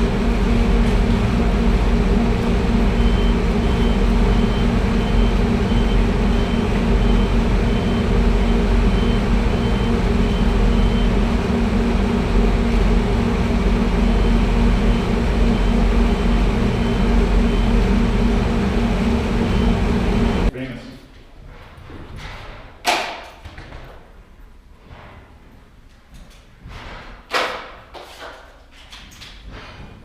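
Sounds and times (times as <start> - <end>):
heavy vehicle engine rumbling: 0.0 - 20.5
reversing alarm beeping: 1.2 - 20.5.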